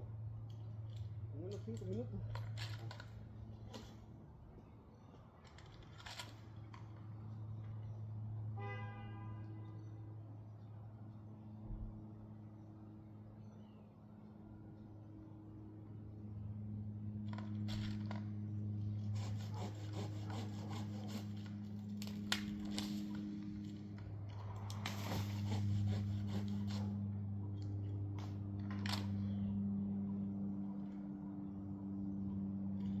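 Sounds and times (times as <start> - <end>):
low engine hum: 0.0 - 33.0
wood and branches scraping: 5.4 - 7.0, 19.1 - 23.8, 24.4 - 27.0.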